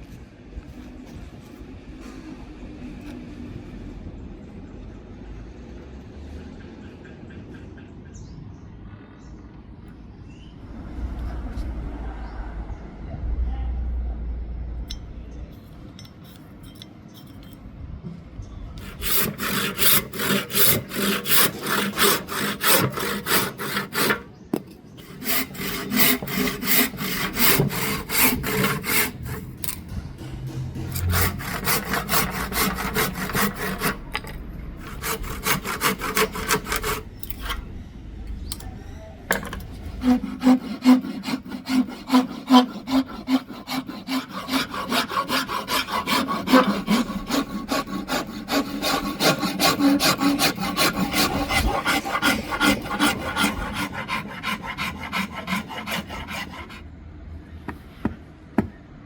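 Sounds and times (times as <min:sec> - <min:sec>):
hand saw cutting wood: 0:18.8 - 0:24.4, 0:25.0 - 0:29.9, 0:30.8 - 0:37.7, 0:40.0 - 0:56.8.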